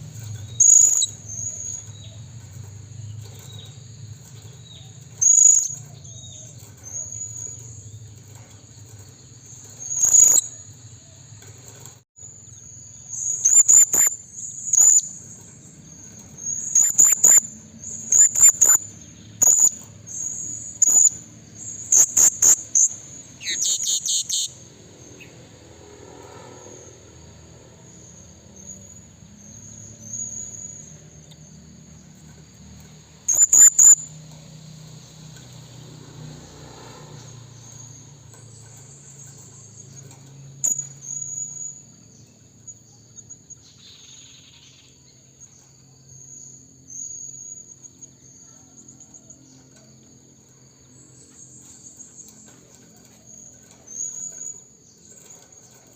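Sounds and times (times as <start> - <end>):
high insect trill: 0.0 - 55.9
parrot shrill high-pitched calls: 0.6 - 1.1, 21.9 - 24.5, 33.3 - 34.0.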